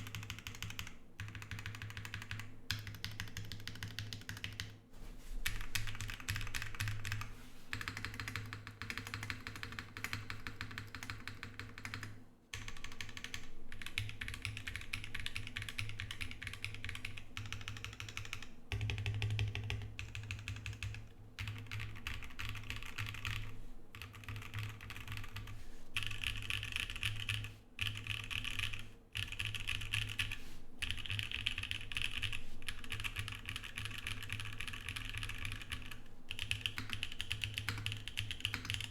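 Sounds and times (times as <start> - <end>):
mechanical keyboard typing: 0.0 - 4.6, 5.5 - 38.9.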